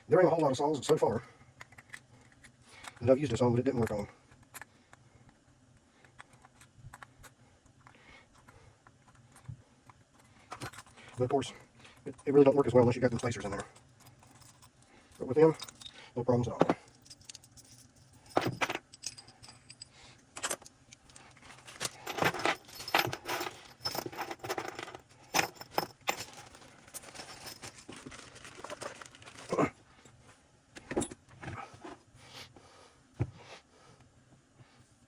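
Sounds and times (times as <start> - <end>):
metal tools clinking and rattling: 13.1 - 29.7.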